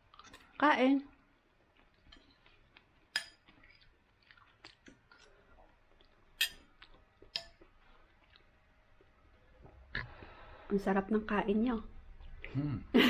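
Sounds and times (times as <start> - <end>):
person chewing: 0.0 - 0.6, 1.3 - 10.4.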